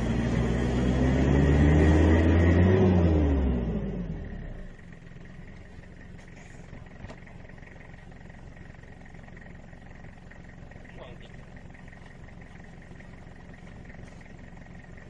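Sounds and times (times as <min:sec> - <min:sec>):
vehicle engine revving down: 0:00.0 - 0:04.8
low engine rumble: 0:00.0 - 0:15.0.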